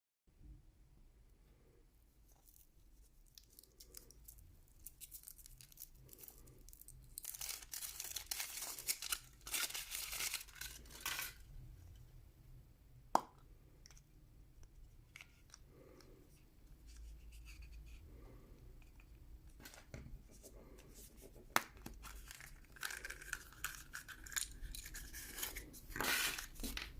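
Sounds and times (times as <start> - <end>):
foil wrapper tearing and crinkling: 3.2 - 11.4, 21.9 - 26.9.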